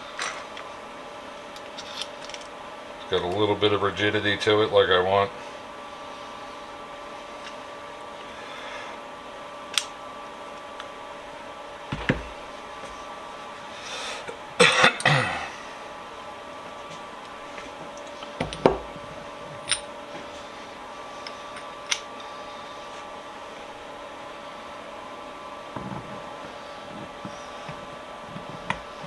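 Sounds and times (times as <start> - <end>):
steady hum: 0.0 - 29.0
metal vise parts clicking: 19.6 - 19.9.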